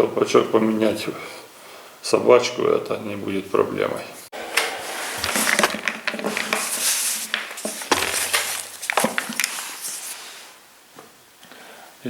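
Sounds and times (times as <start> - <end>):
chainsaw parts clattering: 4.6 - 10.4.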